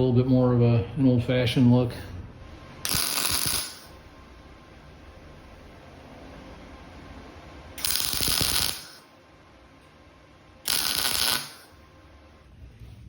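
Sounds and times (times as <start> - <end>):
arc welder crackling: 2.8 - 4.2, 7.7 - 9.2, 10.6 - 11.9.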